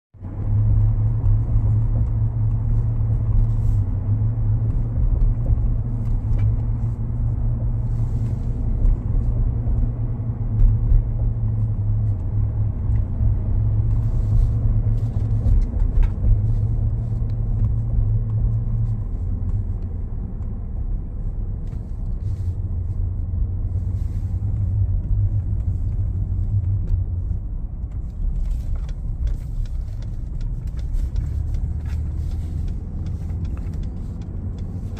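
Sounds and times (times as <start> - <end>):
road rumble: 0.1 - 34.9
truck drivetrain humming: 22.1 - 34.9.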